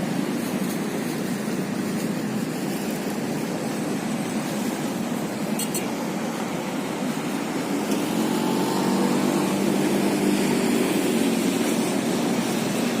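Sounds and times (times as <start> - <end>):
low engine drone: 0.0 - 13.0.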